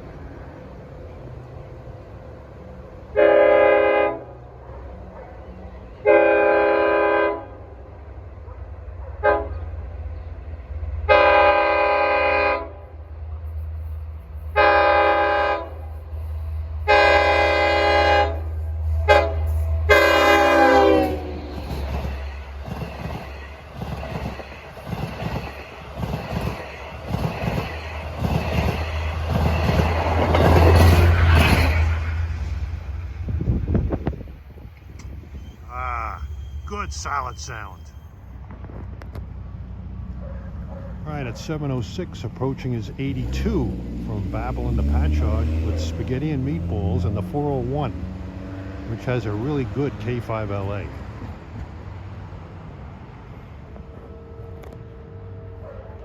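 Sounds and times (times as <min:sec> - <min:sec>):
train air horn blowing: 0:03.1 - 0:04.4, 0:06.0 - 0:07.6, 0:09.2 - 0:09.6, 0:11.1 - 0:12.8, 0:14.5 - 0:16.0, 0:16.8 - 0:21.5
wheels clacking over rail joints: 0:20.1 - 0:32.4.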